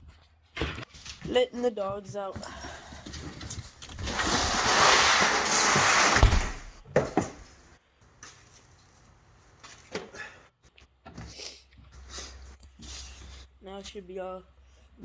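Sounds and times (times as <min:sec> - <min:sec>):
door sliding with scrape: 0:03.9 - 0:06.7
door thump: 0:06.2 - 0:07.4.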